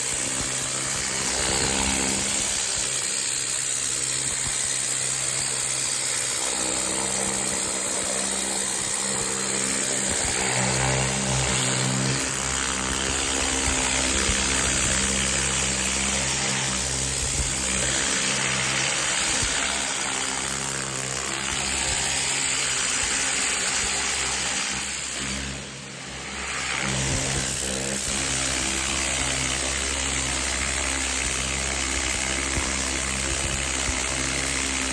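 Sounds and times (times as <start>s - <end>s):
high-pressure water spray hiss: 12.5s - 20.7s, 26.1s - 30.0s.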